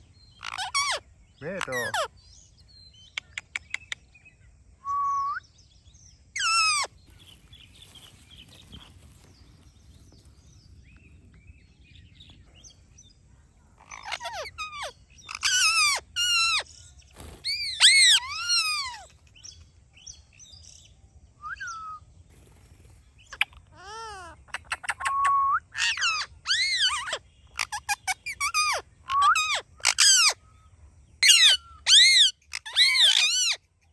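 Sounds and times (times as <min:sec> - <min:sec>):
parrot squawking and chirping: 0:00.3 - 0:01.0, 0:01.6 - 0:02.1, 0:06.4 - 0:07.4, 0:13.8 - 0:16.7, 0:17.4 - 0:19.1, 0:23.3 - 0:25.1, 0:25.8 - 0:30.4, 0:31.2 - 0:33.7
sharp clicks: 0:03.2 - 0:04.0.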